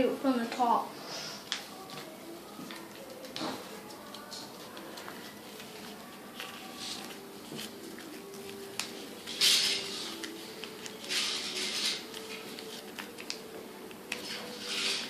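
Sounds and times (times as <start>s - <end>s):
paper being folded and creased: 2.7s - 15.0s.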